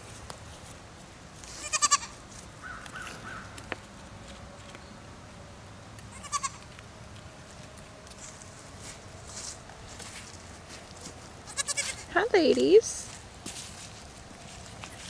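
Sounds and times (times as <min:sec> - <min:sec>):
goat bleating: 0:01.6 - 0:02.2, 0:06.1 - 0:06.6, 0:11.5 - 0:12.2.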